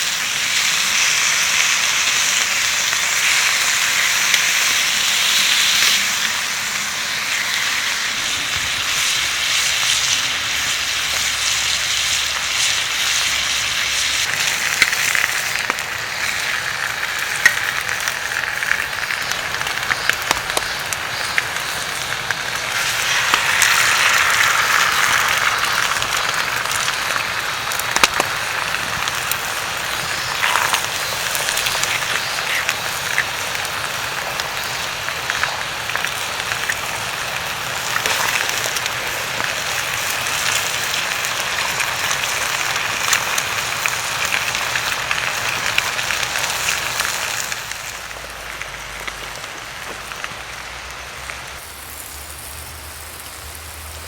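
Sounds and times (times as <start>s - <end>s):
food sizzling in a frying pan: 0.0s - 54.0s
small pops and crackles: 9.6s - 51.6s.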